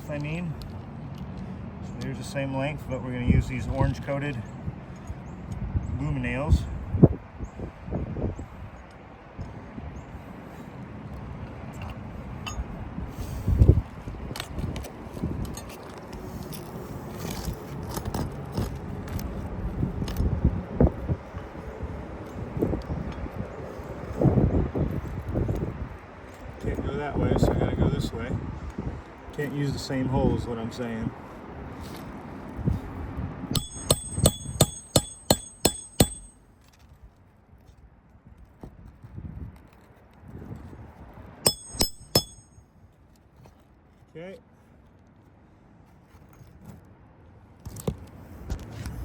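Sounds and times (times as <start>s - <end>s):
hammer striking metal: 33.5s - 36.4s, 41.5s - 42.6s.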